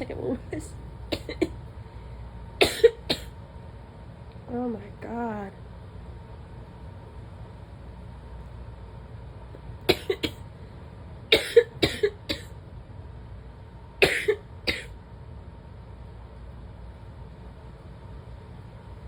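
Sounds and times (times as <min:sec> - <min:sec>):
low background rumble: 0:00.0 - 0:19.0
woman coughing: 0:01.1 - 0:01.6, 0:02.6 - 0:03.4, 0:09.9 - 0:10.4, 0:11.3 - 0:12.6, 0:14.0 - 0:15.0.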